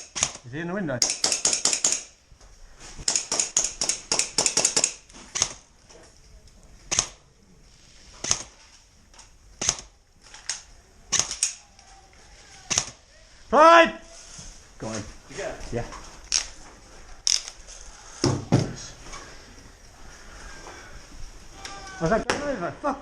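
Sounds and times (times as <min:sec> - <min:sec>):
airsoft guns firing: 0:00.0 - 0:00.4, 0:03.0 - 0:05.7, 0:08.2 - 0:08.6, 0:09.6 - 0:09.9, 0:10.5 - 0:11.6, 0:12.7 - 0:13.0.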